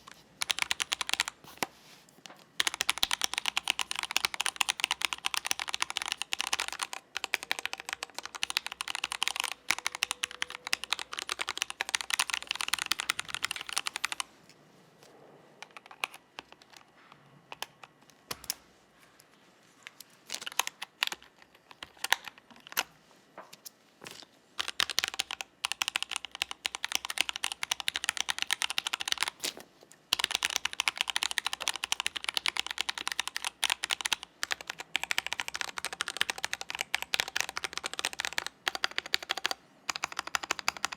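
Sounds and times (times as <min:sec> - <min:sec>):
keyboard typing: 0:00.0 - 0:01.7, 0:02.3 - 0:14.3, 0:15.6 - 0:18.7, 0:19.9 - 0:29.4, 0:30.1 - 0:40.9.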